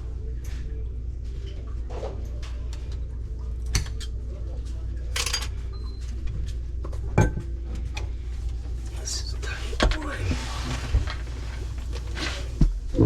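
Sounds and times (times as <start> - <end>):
steady low hum: 7.8 - 13.0.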